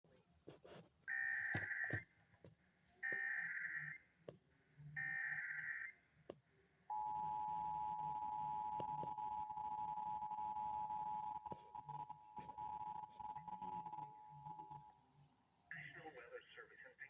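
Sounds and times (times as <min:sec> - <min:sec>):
steady attention tone: 0:06.9 - 0:15.1.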